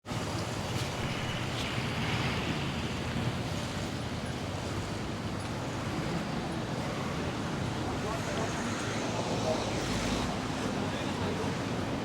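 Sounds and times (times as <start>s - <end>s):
street traffic rumble: 5.5s - 12.0s.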